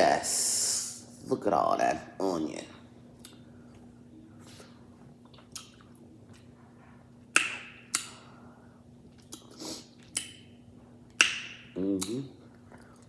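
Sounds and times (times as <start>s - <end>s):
faint steady hum: 0.0s - 13.0s
wet chewing and lip smacking: 3.2s - 6.6s, 9.1s - 11.4s.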